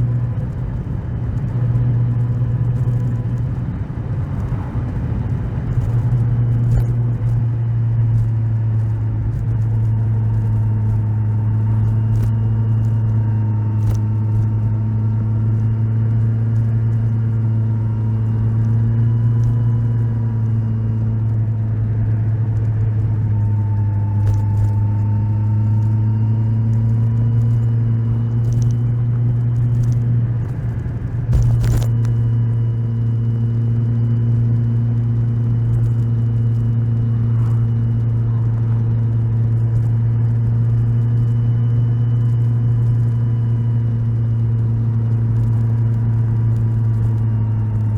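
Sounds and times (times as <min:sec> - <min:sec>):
motorcycle engine cruising: 0:00.0 - 0:47.9.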